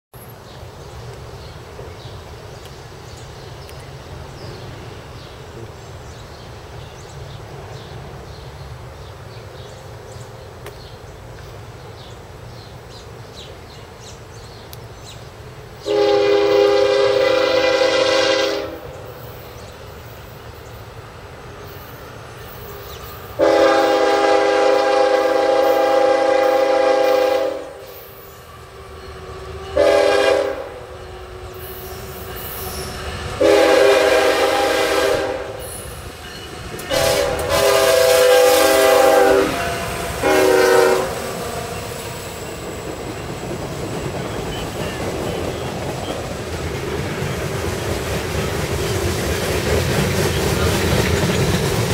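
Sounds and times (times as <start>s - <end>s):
train wheels rumbling past: 0.2s - 51.9s
locomotive air horn blasts: 15.8s - 18.9s, 23.4s - 35.8s, 36.4s - 42.0s.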